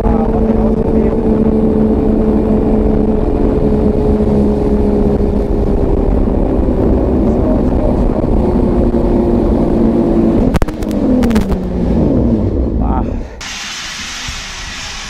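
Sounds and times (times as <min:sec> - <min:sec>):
wind rush on microphone: 0:00.0 - 0:12.7.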